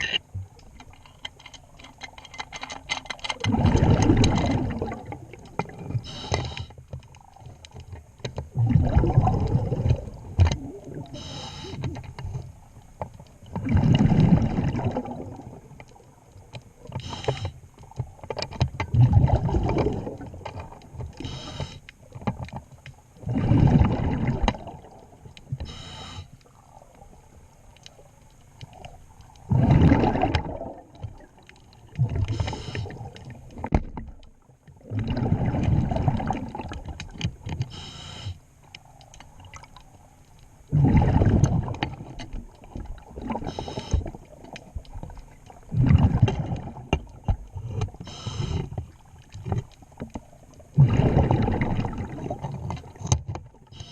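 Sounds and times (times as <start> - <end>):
diver exhaling bubbles: 3.5 - 6.6, 8.5 - 11.2, 13.6 - 15.7, 18.9 - 20.4, 23.2 - 25.0, 29.5 - 31.2, 34.8 - 36.9, 40.7 - 42.2, 45.7 - 46.9, 50.7 - 52.7
hissing regulator inhalations: 6.0 - 6.8, 11.1 - 11.9, 17.0 - 17.6, 21.2 - 21.9, 25.6 - 26.4, 32.3 - 33.0, 37.7 - 38.4, 43.5 - 44.1, 47.8 - 48.8.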